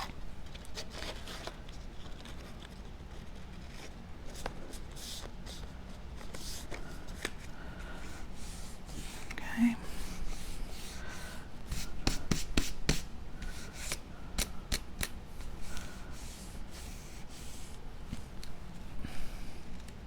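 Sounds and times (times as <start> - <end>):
hands rubbing cardstock: 4.3 - 18.3
sharp paper clicks: 13.8 - 15.2.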